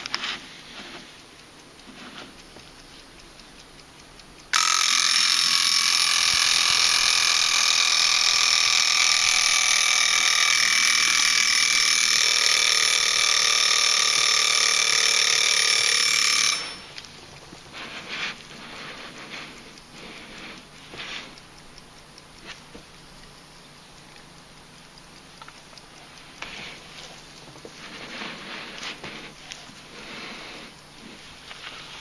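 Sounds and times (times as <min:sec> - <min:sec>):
alarm clock bell ringing: 0:04.5 - 0:19.3.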